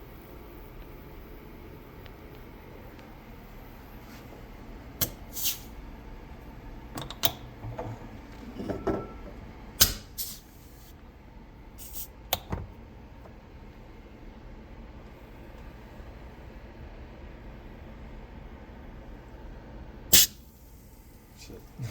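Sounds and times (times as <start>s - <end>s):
gas hissing out: 5.0s - 5.8s, 9.8s - 11.0s, 11.8s - 12.5s, 20.1s - 21.9s.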